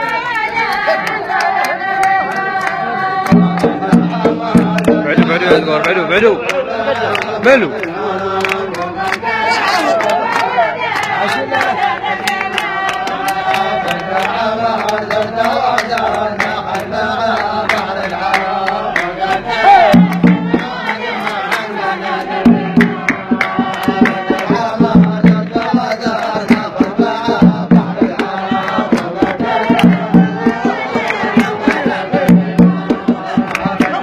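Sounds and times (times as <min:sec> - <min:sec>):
men chanting together: 0:00.7 - 0:34.0
deep drum beats: 0:03.2 - 0:06.3, 0:19.8 - 0:21.1, 0:22.3 - 0:34.0
hand drum rhythm: 0:03.2 - 0:06.5, 0:19.8 - 0:34.0.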